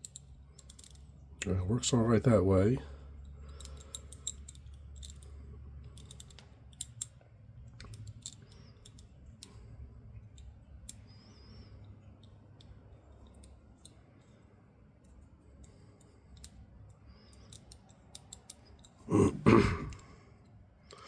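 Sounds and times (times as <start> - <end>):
ratchet clicking: 17.3 - 19.0.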